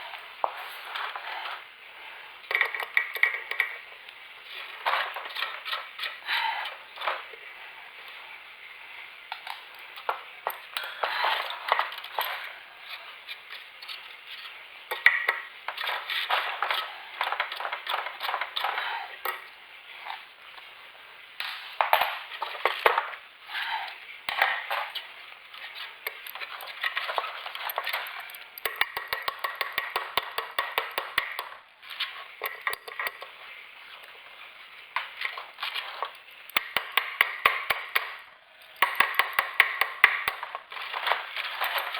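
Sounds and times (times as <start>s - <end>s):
metal tools clinking: 26.1s - 28.8s, 40.8s - 41.9s.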